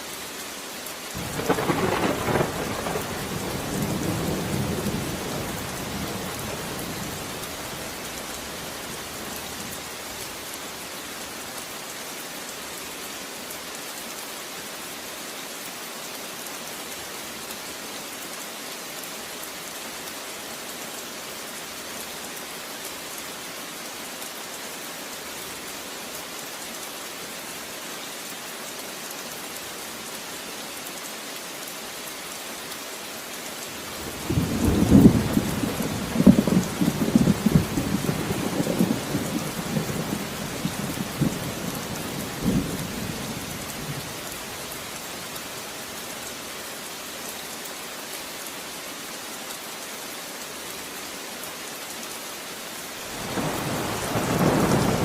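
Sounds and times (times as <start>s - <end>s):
steady rain falling: 0.0s - 55.0s
thunder rumbling: 1.2s - 7.4s, 34.1s - 41.7s, 53.2s - 55.0s.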